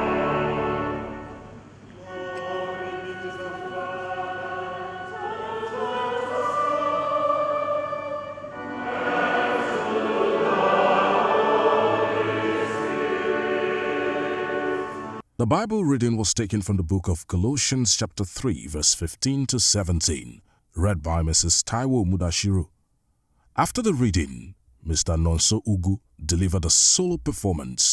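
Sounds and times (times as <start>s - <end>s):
choir singing a hymn: 0.0s - 15.2s.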